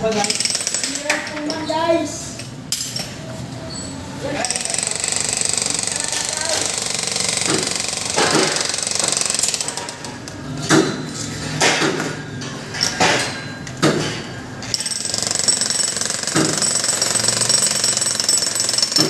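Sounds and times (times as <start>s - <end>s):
jackhammer rattling: 4.4s - 10.1s, 14.7s - 19.0s.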